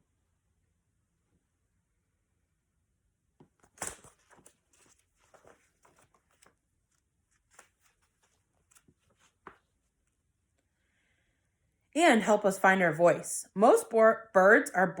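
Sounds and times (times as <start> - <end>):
book pages rustling and turning: 3.4 - 10.2.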